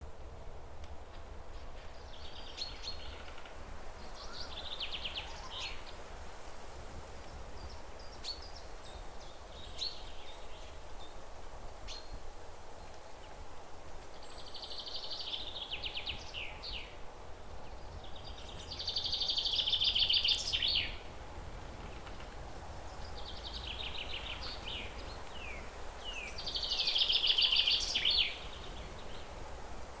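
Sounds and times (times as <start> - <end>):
low outdoor rumble: 12.3 - 30.0
songbird trilling and chirping: 17.8 - 21.1, 22.8 - 29.2.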